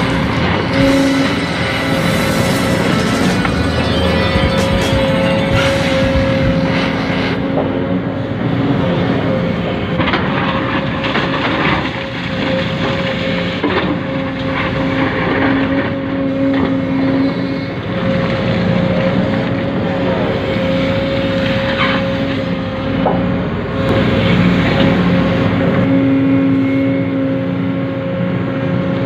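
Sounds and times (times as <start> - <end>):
small electric motors whining: 0.0 - 7.4
mechanical hum: 0.0 - 29.0.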